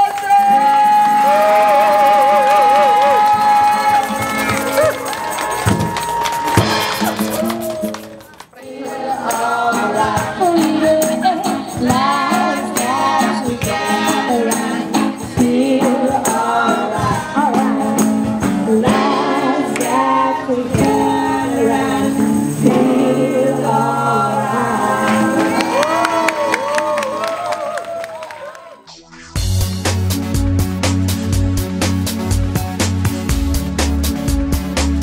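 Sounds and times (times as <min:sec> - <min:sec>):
steady percussion beat: 0:03.2 - 0:08.4
voices singing together: 0:08.6 - 0:26.2.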